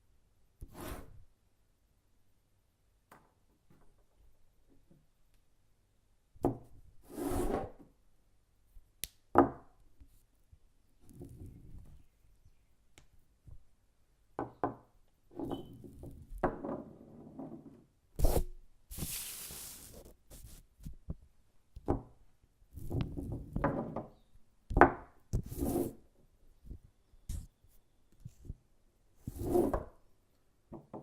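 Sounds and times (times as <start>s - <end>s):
objects knocked and handled: 14.4s - 15.0s, 22.8s - 25.5s, 30.7s - 31.0s.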